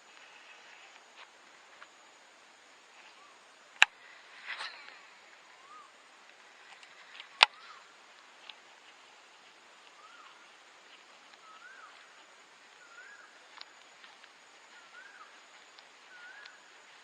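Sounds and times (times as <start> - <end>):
birds chirping: 2.8 - 17.0
brief rustling: 3.8 - 5.8.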